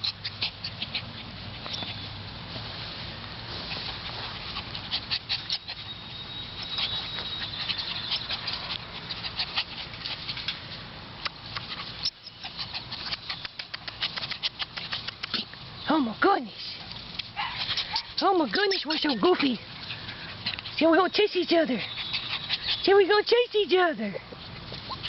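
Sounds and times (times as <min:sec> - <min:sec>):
puppies scuffling and playing: 0:00.0 - 0:25.0
quick irregular crackling clicks: 0:13.1 - 0:15.5.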